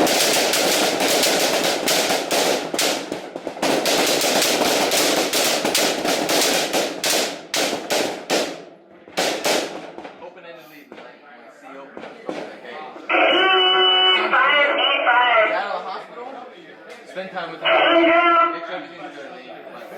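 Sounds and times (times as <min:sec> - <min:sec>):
rifle shots: 0:00.0 - 0:10.2.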